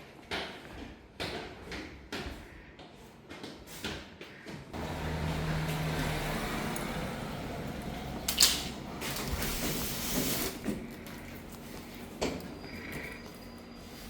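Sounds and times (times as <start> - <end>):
washing machine humming: 4.8 - 14.0.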